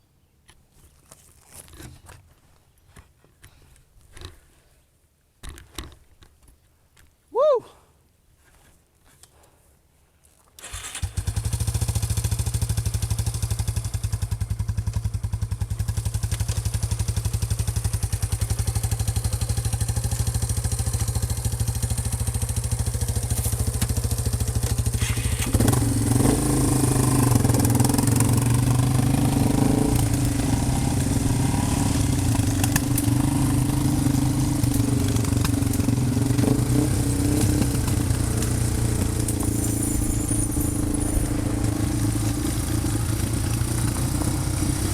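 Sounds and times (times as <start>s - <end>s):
small vehicle engine running: 10.6s - 44.9s.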